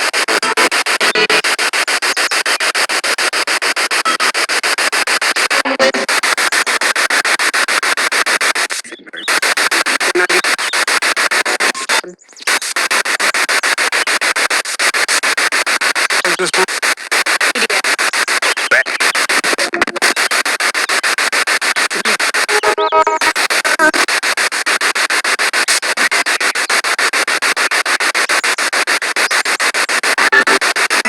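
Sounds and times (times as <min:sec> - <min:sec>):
pulsing radio static: 0:00.0 - 0:31.0
snatches of broadcast sound: 0:00.0 - 0:31.0.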